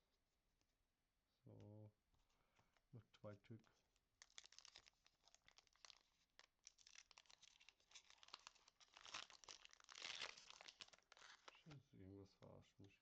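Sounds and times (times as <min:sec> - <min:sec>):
foil wrapper crinkling: 0:04.2 - 0:11.7.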